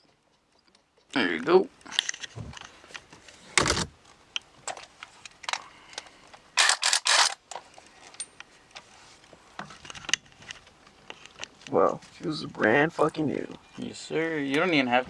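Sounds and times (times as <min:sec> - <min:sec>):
loud rasping bursts: 0:06.6 - 0:07.4.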